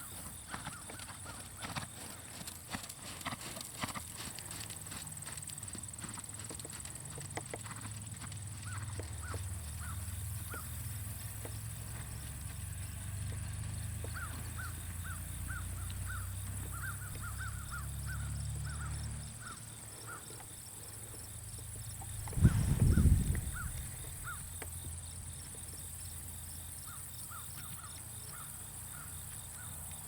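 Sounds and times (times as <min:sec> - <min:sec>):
low rumble: 0:22.2 - 0:24.5.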